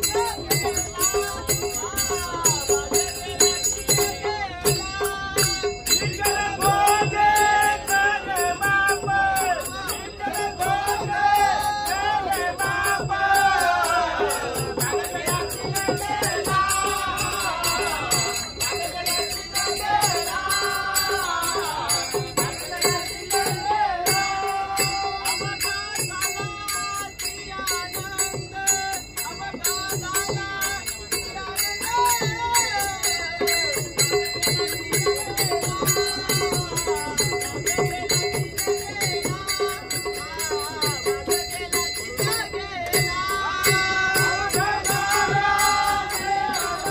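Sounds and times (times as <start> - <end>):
hand cymbals jingling: 0.0 - 46.9
person singing devotional song: 0.0 - 46.9
steady drum beat: 0.0 - 46.9.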